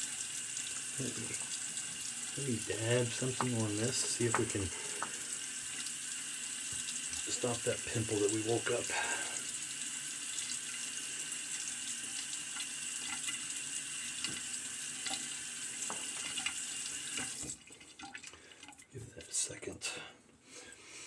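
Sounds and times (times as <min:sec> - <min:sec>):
tap running into sink: 0:01.1 - 0:05.4, 0:06.6 - 0:07.3, 0:14.2 - 0:17.6
small knocks: 0:03.3 - 0:05.2.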